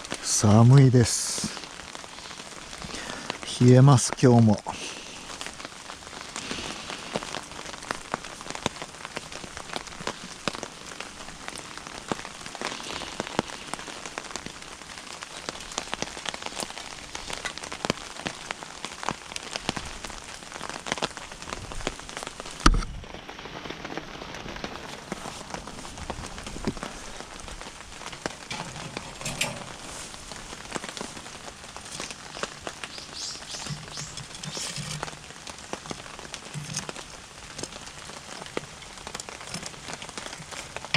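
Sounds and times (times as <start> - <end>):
fire crackling and popping: 0.0 - 40.9.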